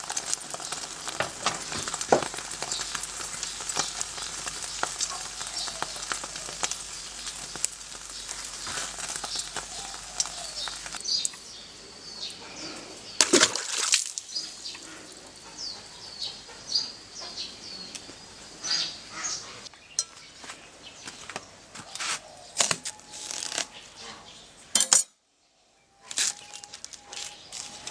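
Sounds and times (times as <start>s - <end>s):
food sizzling in a pan: 0.0s - 11.7s, 13.8s - 16.4s
birds chirping: 0.0s - 24.7s, 25.5s - 27.9s.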